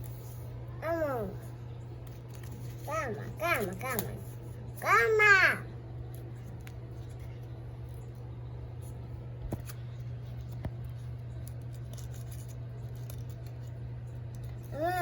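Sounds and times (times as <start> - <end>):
scissors snipping leaves: 3.6 - 4.2.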